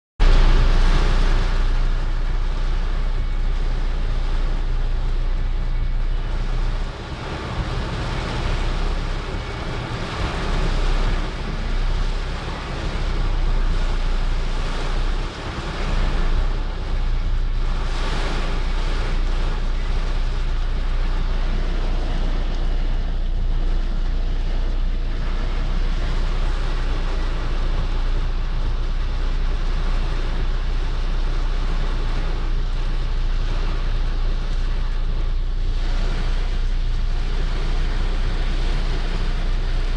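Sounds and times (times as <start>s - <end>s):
deep low rumble: 0.2s - 39.9s
heavy rain on car body: 0.2s - 39.9s.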